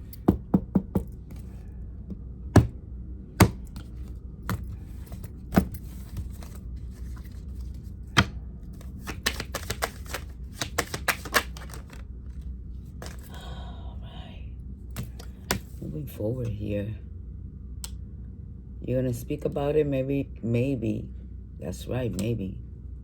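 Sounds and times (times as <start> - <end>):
cards tapping on a table: 0.2 - 1.4, 3.4 - 3.9, 8.2 - 12.0
quick run of card clicks: 8.2 - 12.0.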